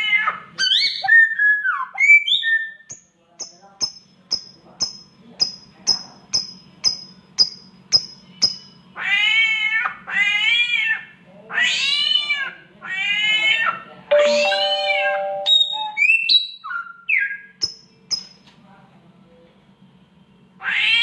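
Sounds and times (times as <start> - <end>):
songbird chirping: 14.1 - 18.4.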